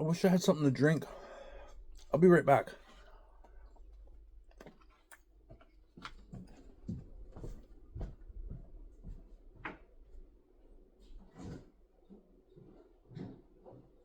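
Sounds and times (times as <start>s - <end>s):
faint footsteps: 5.5s - 10.3s.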